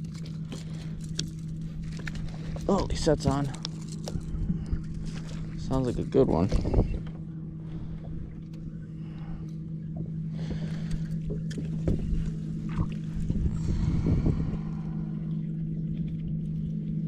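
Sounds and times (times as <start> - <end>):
boat motor humming: 0.0 - 17.0.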